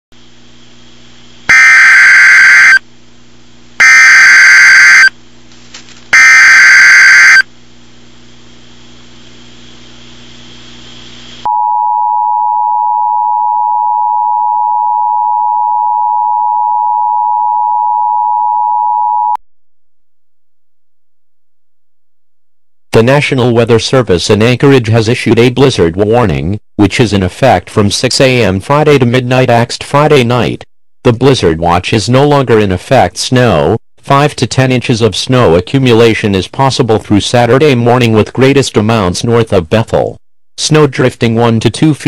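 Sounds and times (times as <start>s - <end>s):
screeching digital data bursts: 1.5s - 2.8s, 6.2s - 7.4s
two-tone attention signal: 1.5s - 2.8s, 3.8s - 5.1s, 6.2s - 7.4s.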